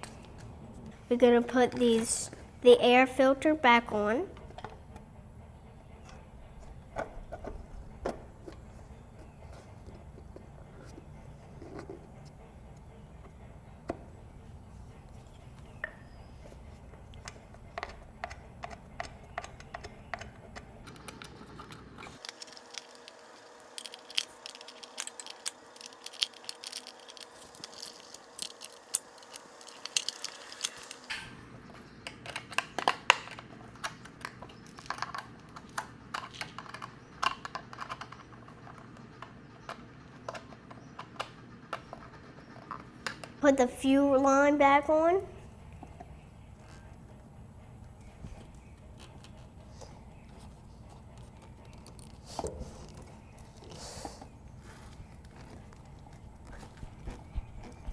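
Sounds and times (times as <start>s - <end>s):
clicks and scrapes of parts: 17.2s - 43.4s.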